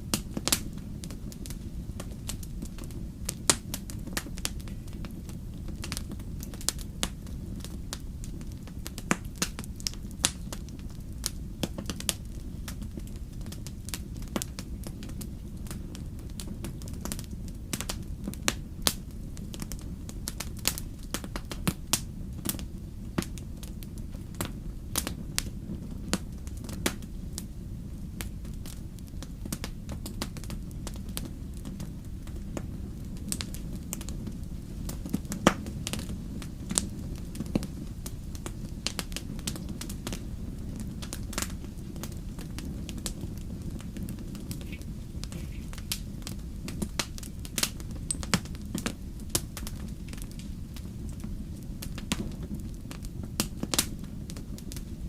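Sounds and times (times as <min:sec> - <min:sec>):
burning logs popping and crackling: 0:00.0 - 0:55.0
low rumble of flames: 0:00.0 - 0:55.0.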